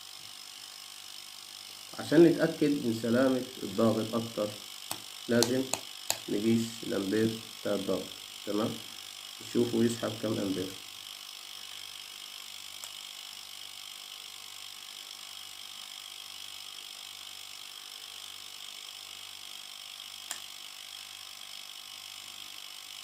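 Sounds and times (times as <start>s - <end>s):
refrigerator compressor humming: 0.0s - 16.4s.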